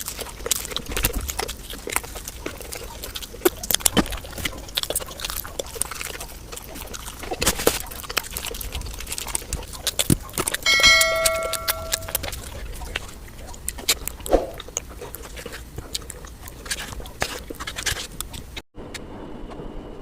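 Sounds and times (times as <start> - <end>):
biting and chewing: 0.0 - 18.6
dish struck and ringing: 10.6 - 12.2.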